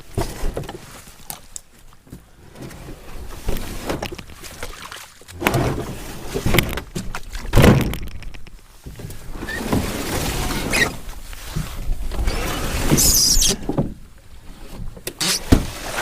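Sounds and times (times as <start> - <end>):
paddle splashes: 3.2 - 7.8.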